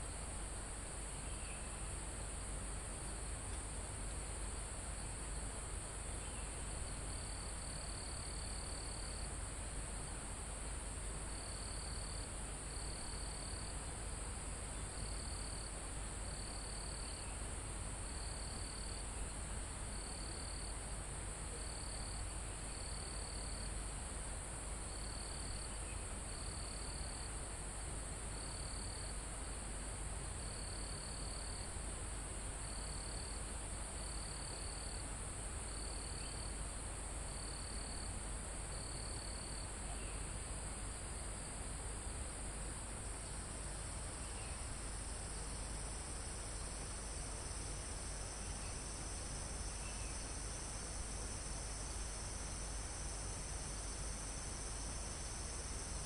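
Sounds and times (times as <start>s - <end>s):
high insect trill: 34.0s - 35.1s, 35.7s - 38.1s, 43.0s - 56.0s
lower insect singing short bouts: 44.1s - 56.0s.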